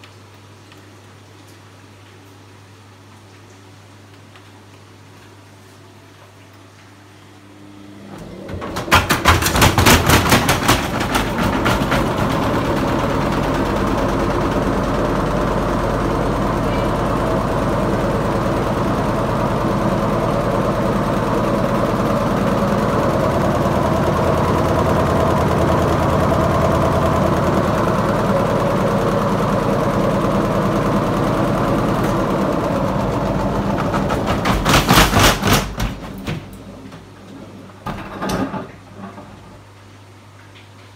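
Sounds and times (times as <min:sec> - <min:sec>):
washing machine spinning: 0:07.4 - 0:40.9
loud knocking of drum: 0:08.6 - 0:13.6, 0:33.8 - 0:36.5
low hum: 0:11.3 - 0:35.0.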